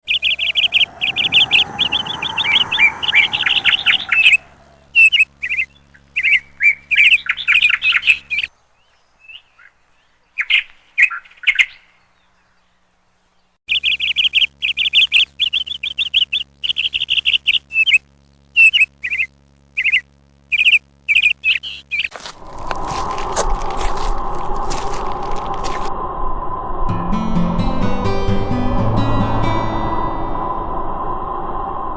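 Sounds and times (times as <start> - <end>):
low gliding tone: 0.0 - 5.0, 26.9 - 31.9
birds chirping: 0.0 - 9.5.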